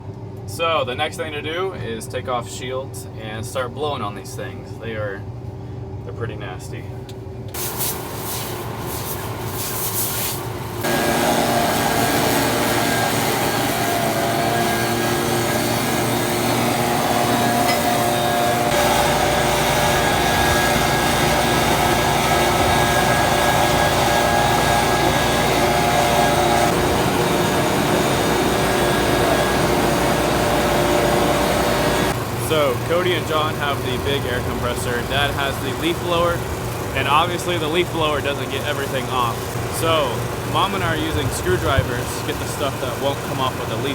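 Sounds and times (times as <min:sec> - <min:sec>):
engine-driven blower rushing: 0:07.6 - 0:43.9
steady motor tones: 0:10.6 - 0:43.9.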